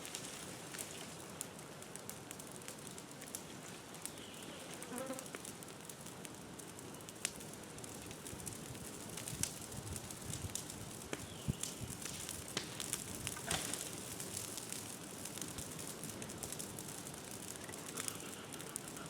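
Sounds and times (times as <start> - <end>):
fire crackling and popping: 0.0 - 19.0
fire hissing: 5.3 - 19.0.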